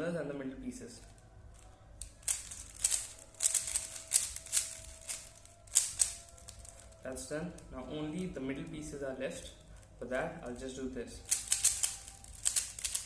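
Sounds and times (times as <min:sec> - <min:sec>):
puzzle cube layers clicking: 0:02.0 - 0:06.9, 0:11.3 - 0:13.0.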